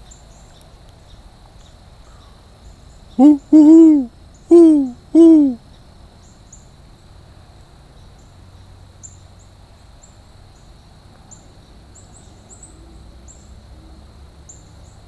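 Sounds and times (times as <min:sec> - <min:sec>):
songbird chip notes: 0:03.2 - 0:05.6.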